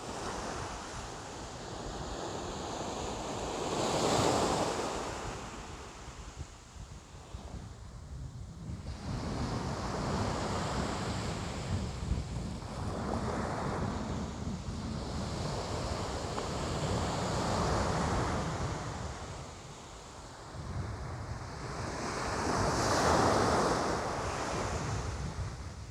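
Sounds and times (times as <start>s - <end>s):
wind rumble on microphone: 0.0s - 25.9s.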